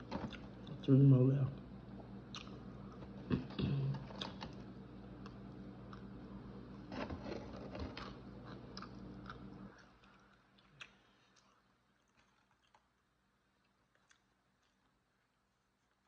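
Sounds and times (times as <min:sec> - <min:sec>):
person chewing: 0:00.0 - 0:00.8, 0:02.3 - 0:06.9, 0:08.0 - 0:16.0
low steady hum: 0:00.0 - 0:16.0.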